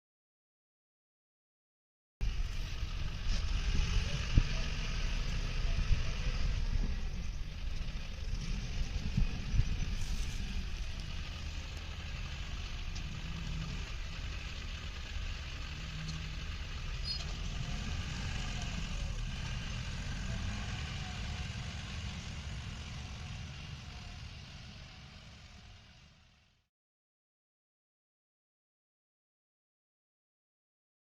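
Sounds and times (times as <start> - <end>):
diesel engine running: 2.2 - 26.7.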